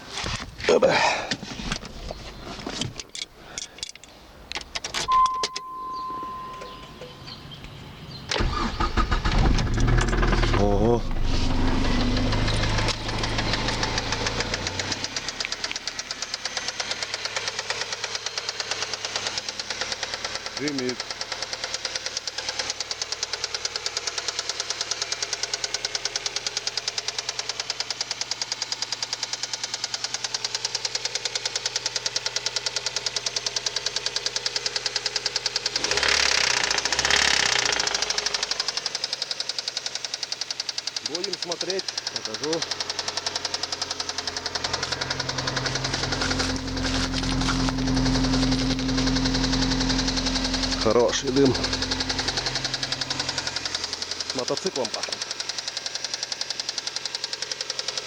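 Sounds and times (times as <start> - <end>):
car keys jangling in ignition: 2.8 - 7.2
high beep: 5.1 - 7.3, 44.7 - 53.6
car engine running: 5.6 - 58.0
rapid engine knocking: 12.2 - 58.0.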